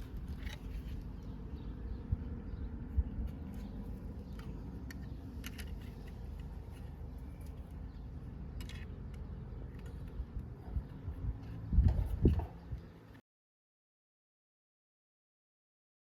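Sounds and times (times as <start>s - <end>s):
light clicks and rattles of parts: 3.3s - 7.8s.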